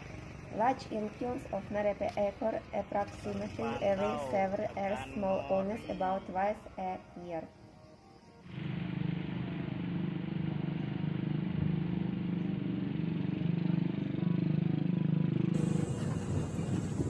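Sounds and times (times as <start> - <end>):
steady low rumble: 15.5 - 17.0
gusty rushing wind noise: 15.6 - 17.0.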